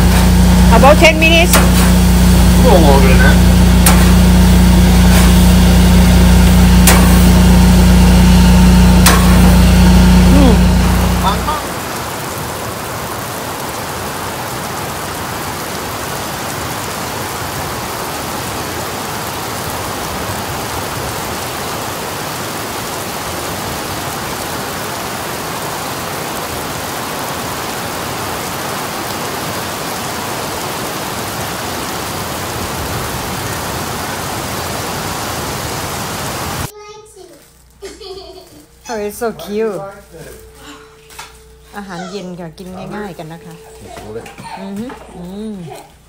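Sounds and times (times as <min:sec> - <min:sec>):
heavy rain falling: 0:00.0 - 0:36.7.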